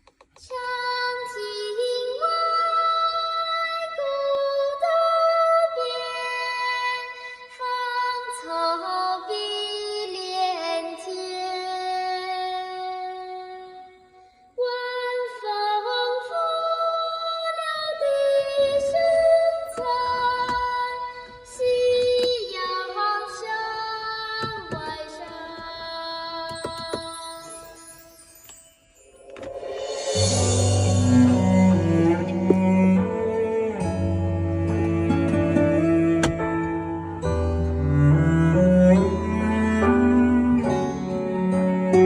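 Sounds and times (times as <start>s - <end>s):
slow melody of held notes: 26.5s - 42.0s
percussive strokes: 29.1s - 33.0s.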